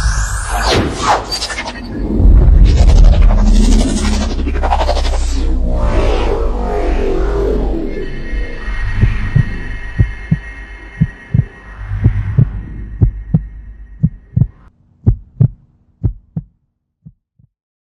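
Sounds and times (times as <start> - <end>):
heartbeat-like bass thumps: 8.9 - 10.4, 11.0 - 17.5.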